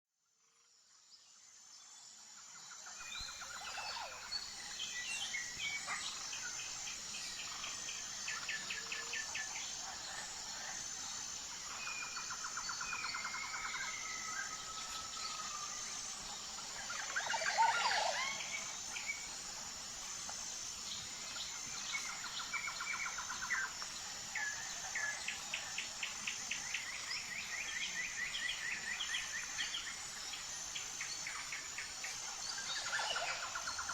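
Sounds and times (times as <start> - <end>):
insects chorus: 0.5 - 33.9
birds singing trills and calls: 3.0 - 11.0.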